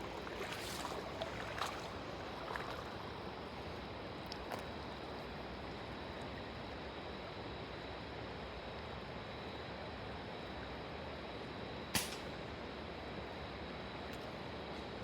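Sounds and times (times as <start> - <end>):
river water rushing: 0.0 - 3.8
sharp knock or splash: 12.0 - 12.2.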